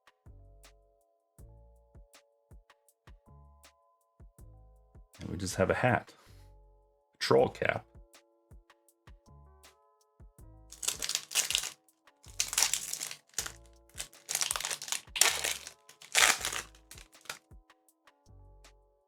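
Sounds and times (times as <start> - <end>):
soft background music: 0.0 - 19.0
foil wrapper crinkling and tearing: 10.7 - 17.4.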